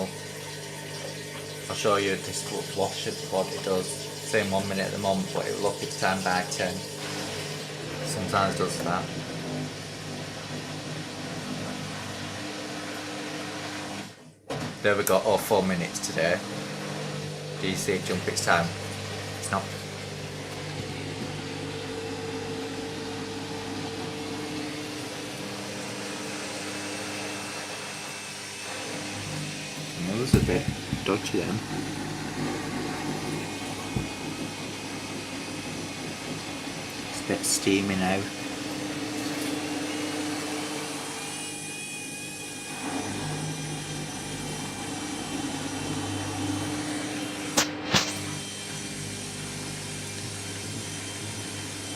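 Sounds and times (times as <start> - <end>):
washing machine spinning: 0.0 - 51.9.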